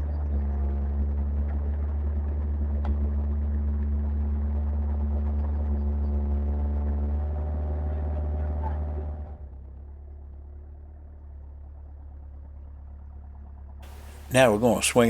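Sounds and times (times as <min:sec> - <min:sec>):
diesel engine running: 0:13.8 - 0:15.0.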